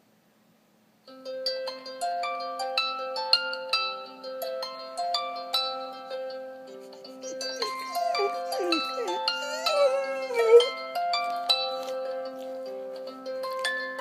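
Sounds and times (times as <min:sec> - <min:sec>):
harp-like phone ringtone: 0:06.9 - 0:10.9.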